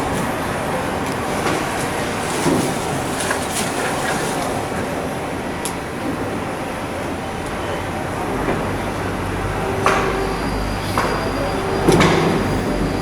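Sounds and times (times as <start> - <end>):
shipyard low hum: 0.0 - 13.0.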